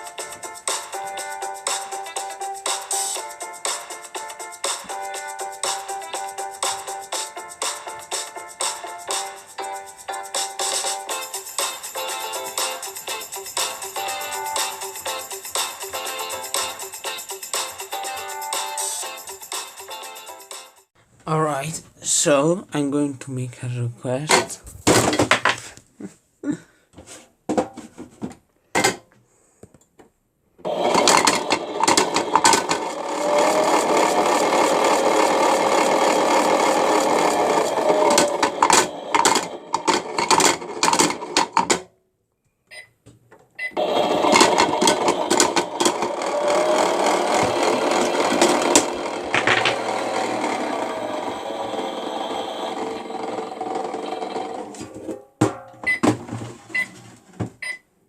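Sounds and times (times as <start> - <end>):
toy motor whirring with plastic rattle: 30.8 - 41.7, 44.0 - 54.8.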